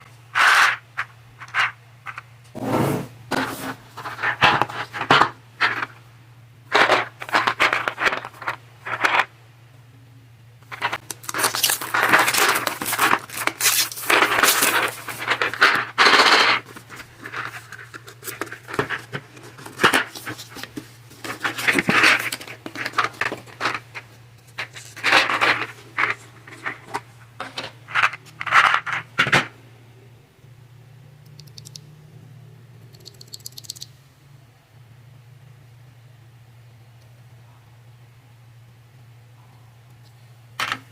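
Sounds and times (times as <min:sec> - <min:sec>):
packaging tearing and crinkling: 0:10.8 - 0:20.7
small plastic parts clicking: 0:32.9 - 0:33.9.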